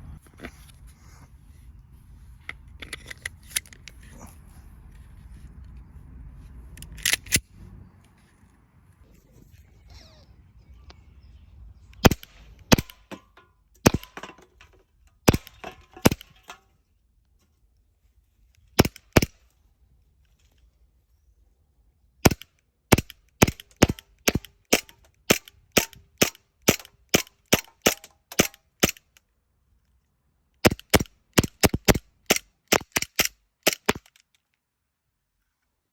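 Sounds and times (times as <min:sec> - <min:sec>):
airsoft pistol shots: 0:13.8 - 0:14.2.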